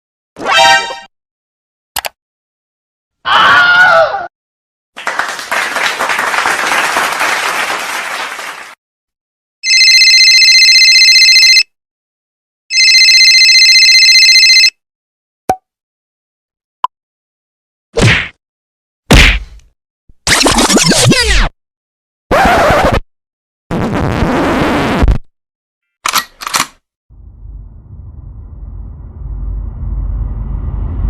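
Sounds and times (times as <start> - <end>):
short clicks: 2.0 - 2.2, 26.0 - 26.8
applause: 5.0 - 8.8
telephone ringing: 9.6 - 11.7, 12.7 - 14.8.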